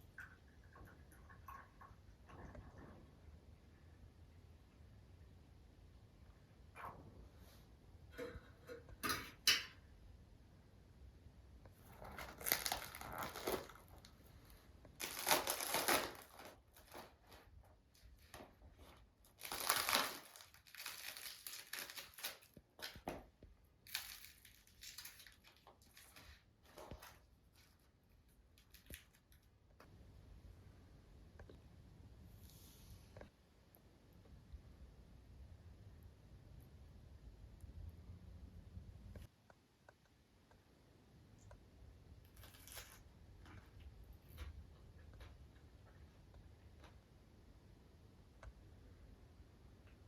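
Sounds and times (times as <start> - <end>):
dry crunching and rustling: 11.9 - 14.2, 15.0 - 17.5, 19.3 - 23.1.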